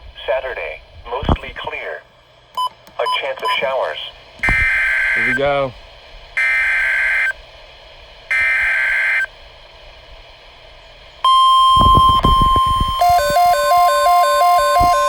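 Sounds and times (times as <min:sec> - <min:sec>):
data burst tones: 0:04.4 - 0:05.5, 0:11.3 - 0:15.0
steady warning alarm tone: 0:04.4 - 0:05.6, 0:06.4 - 0:07.4, 0:08.3 - 0:09.3, 0:11.3 - 0:15.0
rapid two-note electronic beeping: 0:12.4 - 0:15.0.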